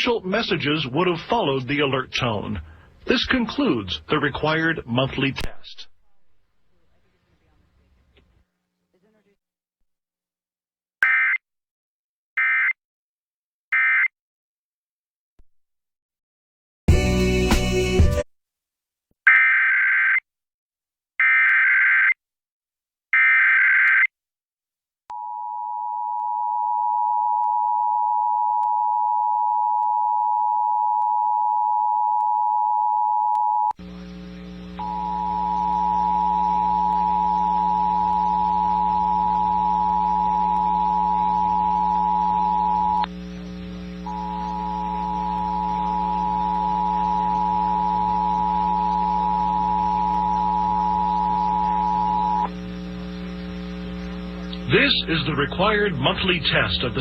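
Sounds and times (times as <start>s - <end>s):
radio hiss: 0.0s - 5.9s, 33.8s - 57.0s
low hum: 33.8s - 57.0s.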